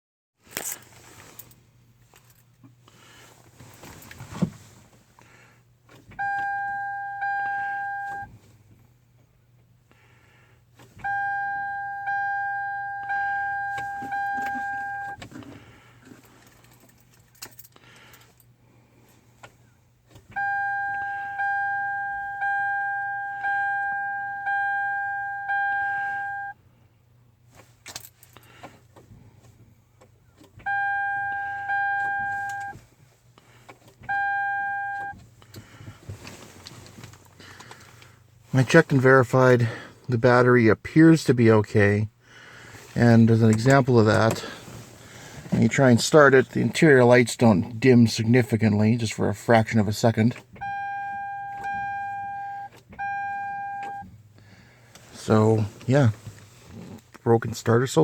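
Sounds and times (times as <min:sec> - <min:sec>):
dashboard warning chime beeps: 0:06.2 - 0:08.3, 0:11.0 - 0:15.2, 0:20.3 - 0:26.6, 0:30.6 - 0:32.8, 0:34.0 - 0:35.2, 0:50.6 - 0:54.2.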